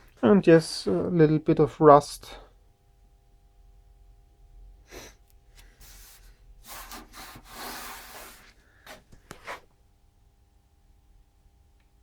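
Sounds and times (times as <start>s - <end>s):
oscilloscope scraping on surface: 5.8s - 8.6s.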